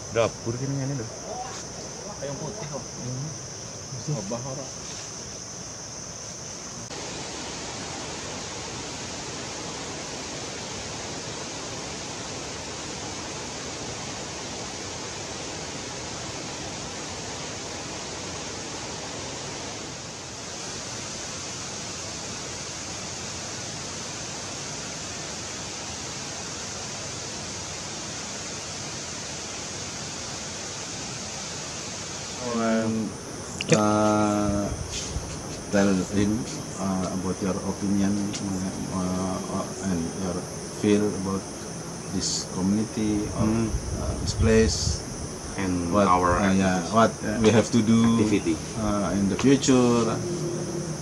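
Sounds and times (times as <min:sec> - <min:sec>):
waterfall roaring: 0:29.0 - 0:44.9, 0:45.5 - 0:51.0.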